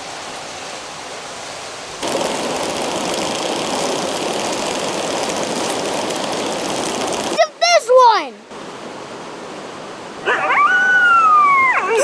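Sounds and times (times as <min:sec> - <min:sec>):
river water rushing: 0:00.0 - 0:10.6.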